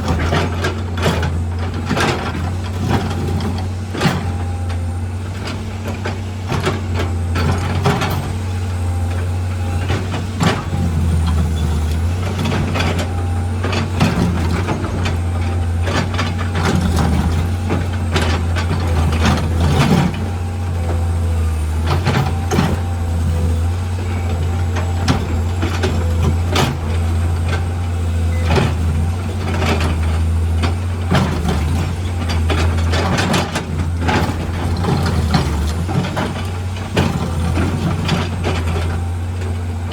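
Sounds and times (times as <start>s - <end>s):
diesel engine running: 0.0s - 39.9s
excavator bucket clanking on rock: 9.8s - 39.9s.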